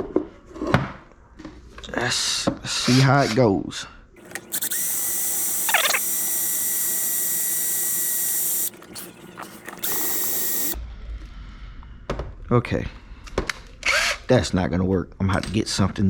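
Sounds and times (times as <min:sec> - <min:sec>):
power drill running: 0:04.2 - 0:10.8.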